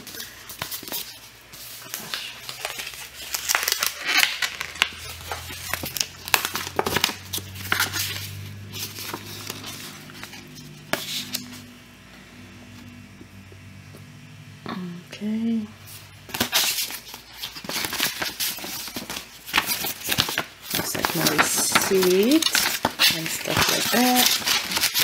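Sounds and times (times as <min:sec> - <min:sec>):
paper rustling and crinkling: 0:00.0 - 0:11.6, 0:15.9 - 0:25.0.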